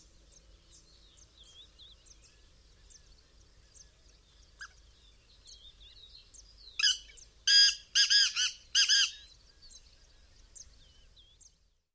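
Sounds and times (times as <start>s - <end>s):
small birds chirping: 0.0s - 11.8s
bird rasping calls: 6.8s - 9.2s.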